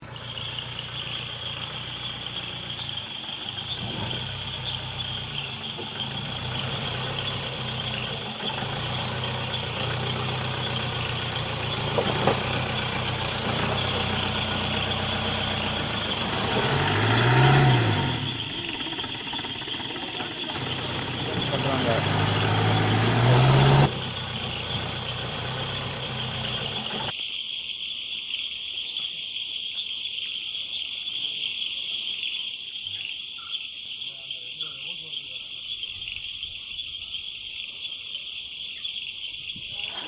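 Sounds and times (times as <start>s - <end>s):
vehicle engine running: 0.0s - 27.1s.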